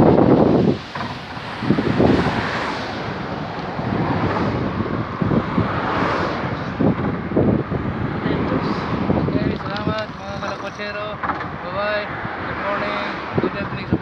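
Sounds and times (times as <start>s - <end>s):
steady rushing background noise: 0.0s - 14.0s
wind buffeting microphone: 0.0s - 14.0s.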